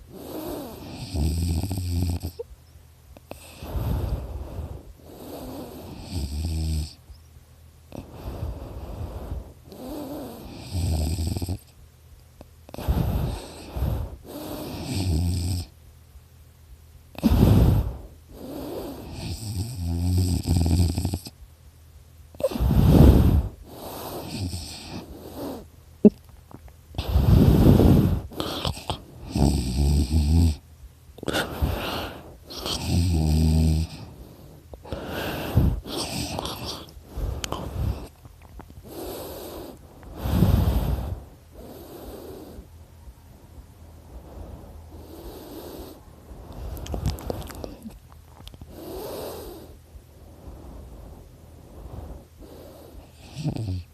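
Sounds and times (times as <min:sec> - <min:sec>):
person snoring: 0:00.1 - 0:02.4, 0:03.3 - 0:07.0, 0:07.9 - 0:11.7, 0:12.8 - 0:15.7, 0:22.4 - 0:26.2, 0:27.0 - 0:30.6, 0:31.2 - 0:34.2, 0:34.8 - 0:38.2, 0:52.4 - 0:53.9.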